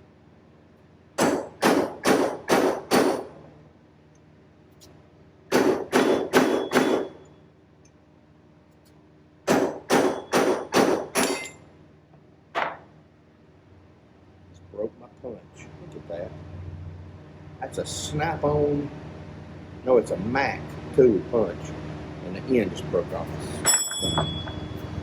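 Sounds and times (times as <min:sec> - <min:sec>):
hammer striking steel punch: 0:01.2 - 0:03.4, 0:05.5 - 0:07.2, 0:09.5 - 0:11.6, 0:23.7 - 0:24.7.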